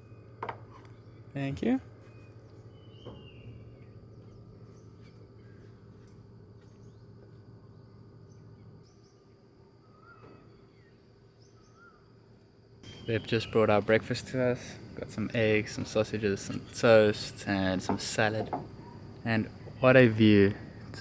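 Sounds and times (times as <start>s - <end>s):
insects droning: 0.0s - 21.0s
low steady hum: 0.0s - 21.0s
bird chirps and calls: 12.8s - 13.7s.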